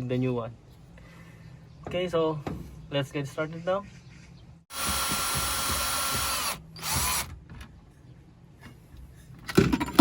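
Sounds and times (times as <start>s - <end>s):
cordless drill running: 4.7s - 7.3s.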